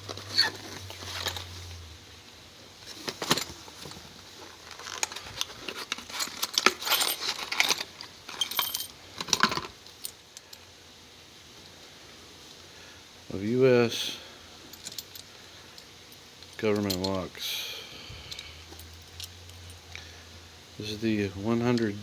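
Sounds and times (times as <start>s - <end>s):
padlocks and keys clinking: 4.7s - 10.6s.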